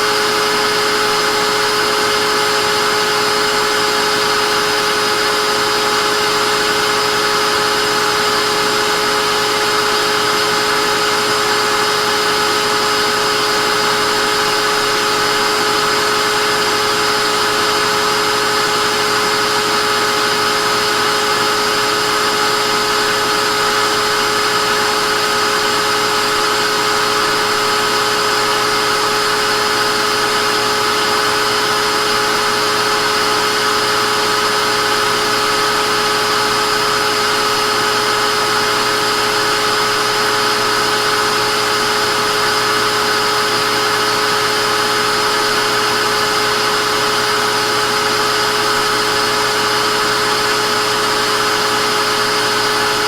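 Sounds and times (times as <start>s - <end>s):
vacuum cleaner running: 0.0s - 53.0s.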